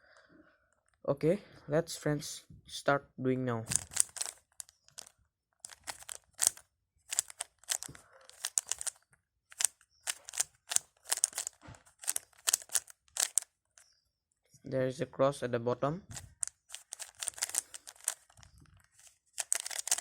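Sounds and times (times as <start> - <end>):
puzzle cube clicking: 3.7 - 13.9, 16.1 - 20.0.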